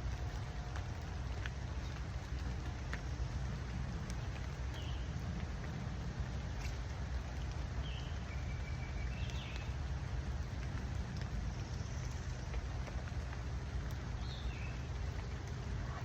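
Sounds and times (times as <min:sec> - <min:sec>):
steady rain: 0:00.0 - 0:16.0.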